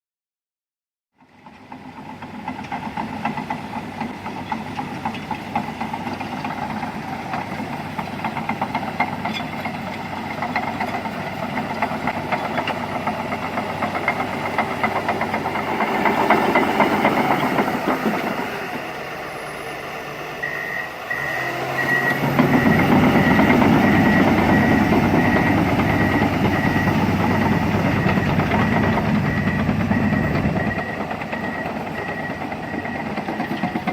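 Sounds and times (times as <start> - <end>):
bulldozer diesel engine running: 1.2 - 33.9
reverse alarm beeping: 20.4 - 33.8.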